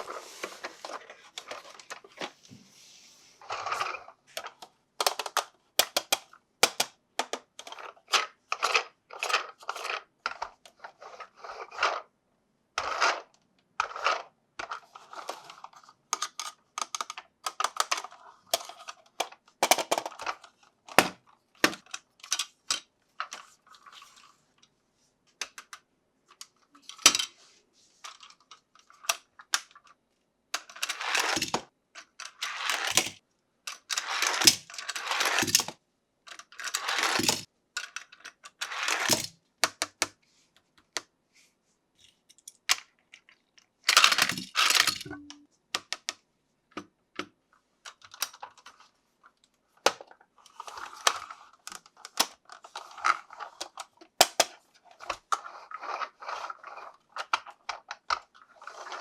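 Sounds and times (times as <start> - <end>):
plastic toy parts clicking: 3.7 - 10.8, 13.8 - 20.4, 30.6 - 35.7, 36.3 - 40.1, 42.3 - 46.2.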